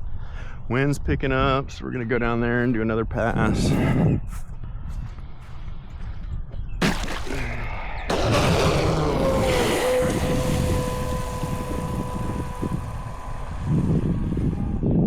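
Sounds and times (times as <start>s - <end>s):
wind noise on microphone: 0.0s - 15.0s
electric motor whining: 8.1s - 15.0s.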